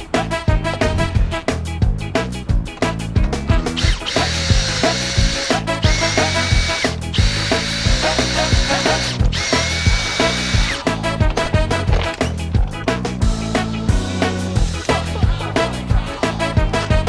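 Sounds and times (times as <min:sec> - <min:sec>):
background music with beat: 0:00.0 - 0:17.0
power drill motor whine: 0:03.8 - 0:10.8.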